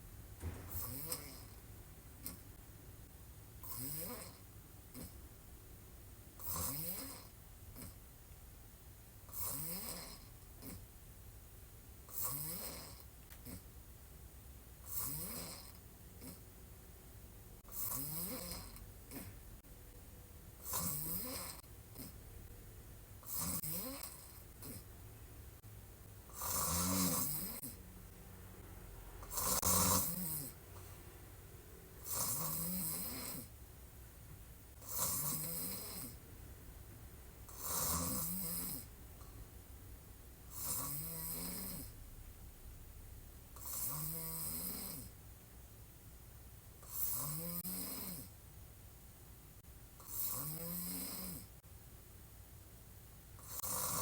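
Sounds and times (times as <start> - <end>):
woman snoring: 0.7 - 1.6, 3.6 - 5.2, 6.4 - 8.0, 9.3 - 10.8, 12.1 - 13.6, 14.8 - 16.4, 17.6 - 19.3, 20.6 - 22.2, 23.2 - 24.9, 26.3 - 27.8, 29.2 - 30.6, 32.0 - 33.5, 34.8 - 36.2, 37.5 - 38.9, 40.5 - 42.0, 43.6 - 45.1, 46.8 - 48.3, 50.0 - 51.5, 53.4 - 54.0.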